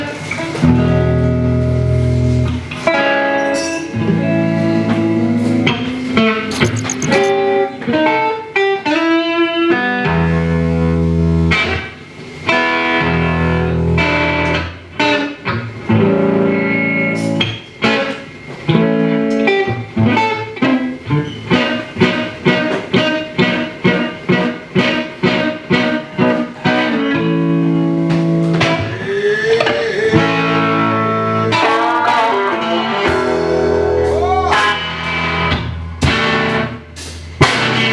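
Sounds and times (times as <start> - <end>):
reggae band playing: 0.0 - 8.5, 21.5 - 37.9
choppy guitar chords: 0.0 - 11.8, 12.6 - 37.9.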